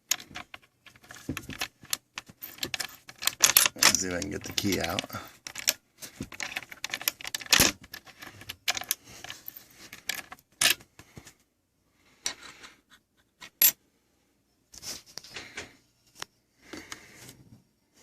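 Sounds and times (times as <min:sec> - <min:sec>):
key rattling in door lock: 0:00.1 - 0:09.0.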